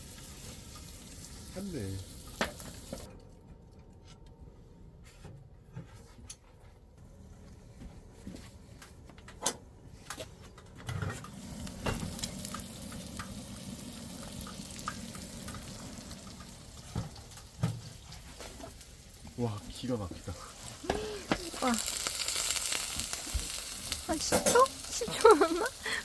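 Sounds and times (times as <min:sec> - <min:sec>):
food sizzling in a pan: 0:00.0 - 0:03.1, 0:11.2 - 0:26.0.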